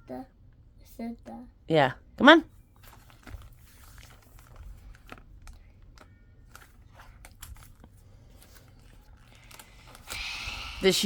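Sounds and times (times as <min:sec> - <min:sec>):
wrapping paper crinkling and tearing: 0:02.8 - 0:10.3.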